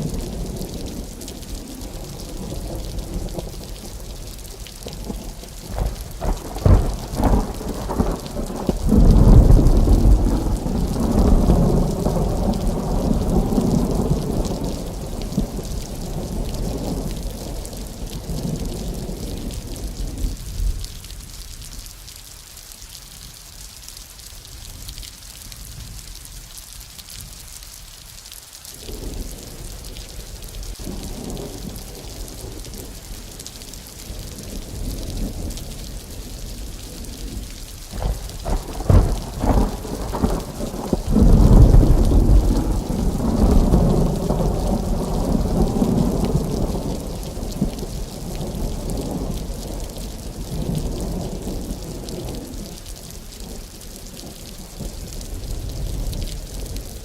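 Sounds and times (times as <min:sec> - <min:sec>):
thunder rumbling and cracking: 0:00.0 - 0:20.9, 0:30.7 - 0:57.0
steady rain hiss: 0:00.0 - 0:57.0.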